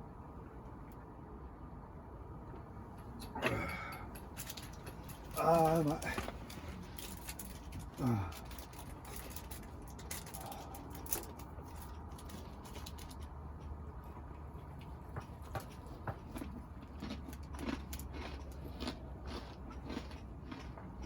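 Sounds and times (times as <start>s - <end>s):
person chewing: 4.6s - 13.0s, 15.8s - 21.0s.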